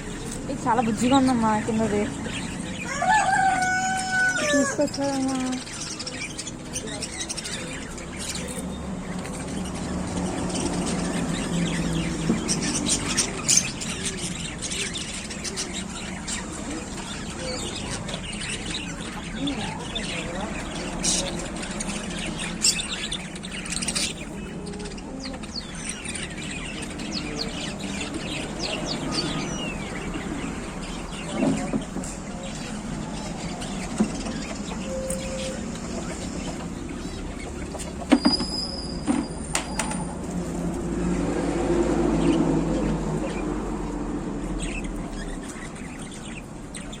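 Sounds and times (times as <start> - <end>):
lovebirds chirping: 0.0 - 47.0
vehicle engine passing: 6.8 - 38.0, 40.0 - 46.7.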